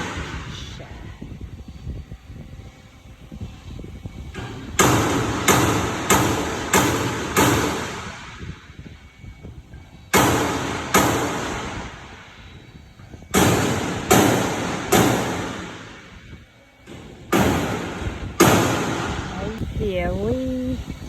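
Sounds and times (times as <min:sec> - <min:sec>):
loud sharp ringing knocks: 0:04.3 - 0:08.4, 0:09.7 - 0:12.0, 0:13.0 - 0:16.0, 0:16.9 - 0:19.3.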